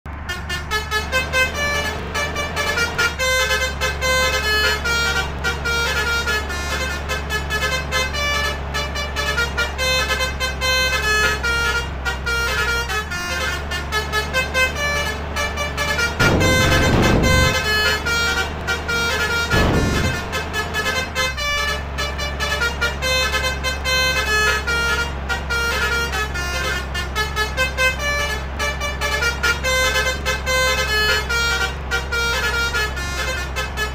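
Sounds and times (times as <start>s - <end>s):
bus engine drone: 0.0s - 33.9s
multi-tone bus horn melody: 0.1s - 33.9s
loud rushing noises: 16.1s - 21.4s.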